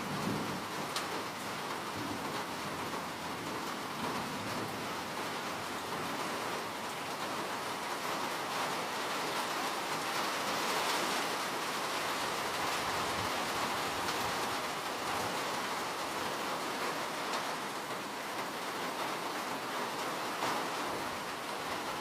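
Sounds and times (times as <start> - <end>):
rain falling: 0.0 - 22.0.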